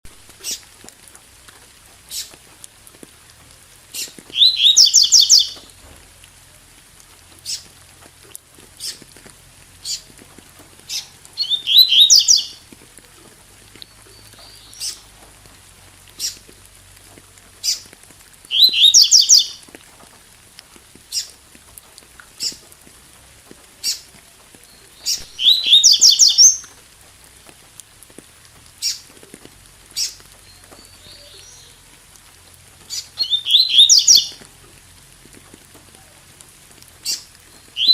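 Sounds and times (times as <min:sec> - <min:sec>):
bird singing rapid high notes: 0:04.4 - 0:05.6, 0:11.4 - 0:12.6, 0:18.5 - 0:19.6, 0:25.1 - 0:26.6, 0:33.2 - 0:34.3.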